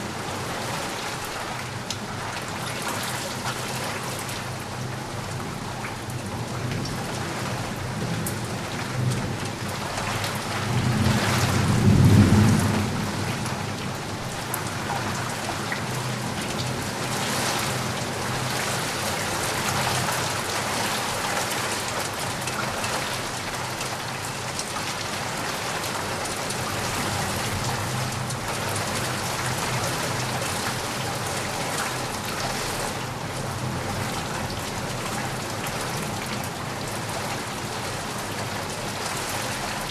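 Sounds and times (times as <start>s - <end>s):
rain pattering: 0.0s - 39.9s
low thunder rumble: 10.4s - 14.4s.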